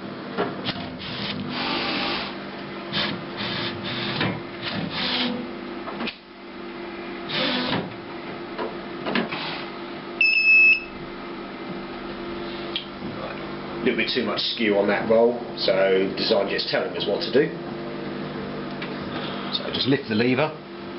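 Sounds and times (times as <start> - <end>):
printer motor hum: 0.7 - 5.7.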